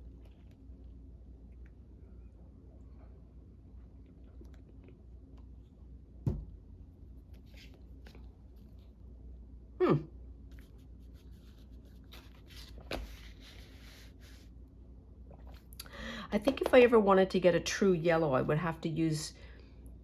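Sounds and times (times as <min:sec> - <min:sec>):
paper rustling: 0:10.6 - 0:14.4.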